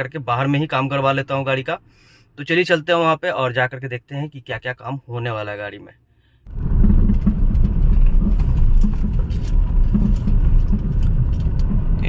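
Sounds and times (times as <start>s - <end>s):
car road and engine noise: 6.2s - 12.0s.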